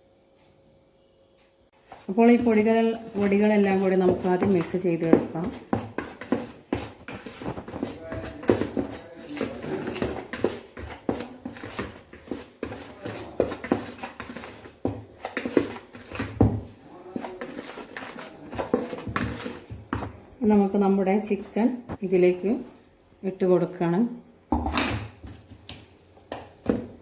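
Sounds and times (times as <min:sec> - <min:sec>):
spoon knocking and scraping bowl: 0:01.9 - 0:20.7.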